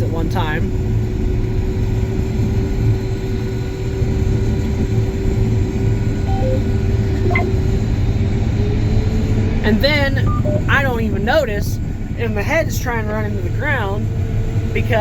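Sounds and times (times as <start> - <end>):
short beeps: 6.3 - 7.6, 10.2 - 10.9
combine engine and threshing rumble: 11.2 - 15.0.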